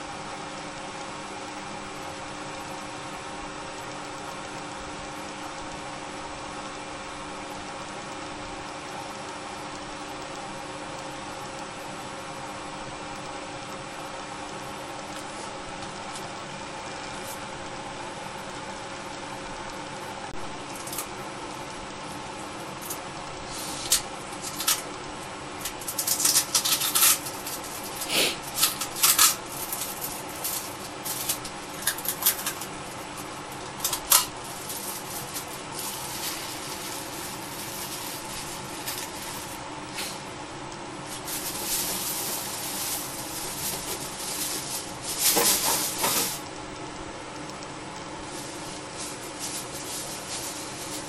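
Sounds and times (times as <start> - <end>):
background hum: 0.0 - 51.0.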